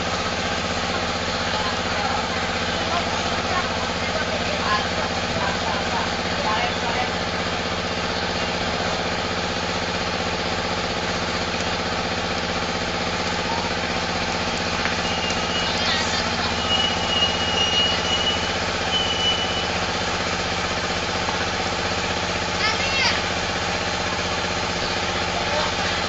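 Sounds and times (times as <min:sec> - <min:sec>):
large engine idling: 0:00.0 - 0:26.0
short high-pitched tones: 0:15.0 - 0:19.8.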